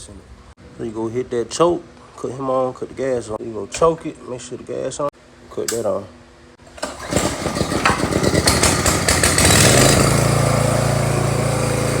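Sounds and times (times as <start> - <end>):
small gas engine starting: 6.6 - 12.0.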